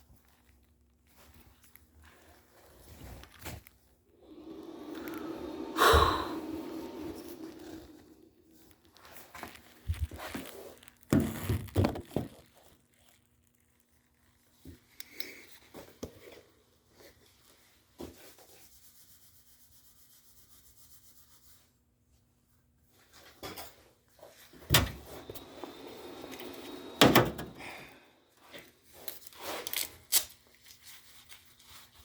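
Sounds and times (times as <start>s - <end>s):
weak high hum: 4.2s - 8.6s.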